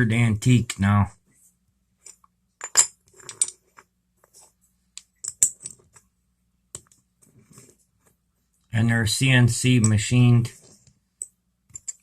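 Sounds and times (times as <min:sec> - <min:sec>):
metal parts clinking: 0:02.0 - 0:03.6, 0:11.7 - 0:12.0.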